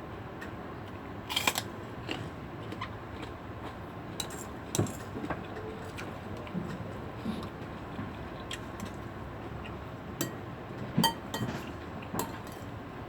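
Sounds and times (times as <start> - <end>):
person chewing: 1.3 - 3.8.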